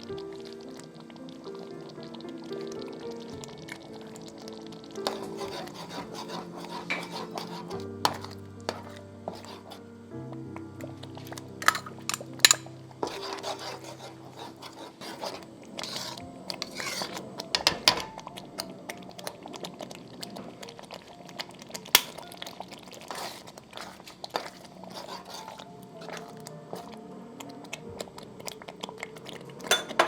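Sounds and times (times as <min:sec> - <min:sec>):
utensils clinking on cookware: 0:05.1 - 0:09.8, 0:11.6 - 0:18.2, 0:29.7 - 0:30.0.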